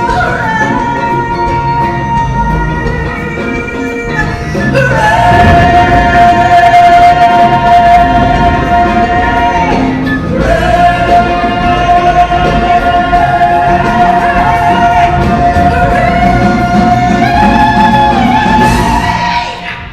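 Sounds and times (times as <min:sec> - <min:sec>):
musical accompaniment: 0:00.0 - 0:19.9.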